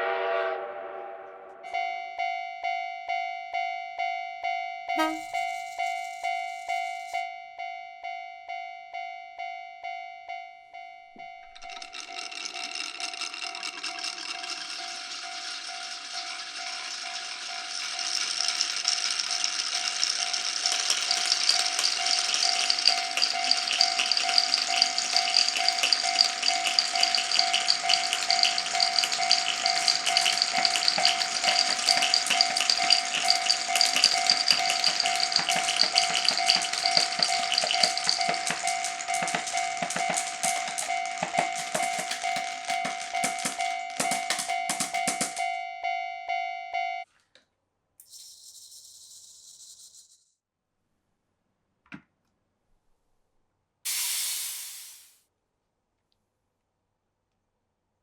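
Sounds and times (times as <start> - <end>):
steady high tone: 4.6 - 11.6
glass marbles rattling in wooden run: 11.2 - 45.6.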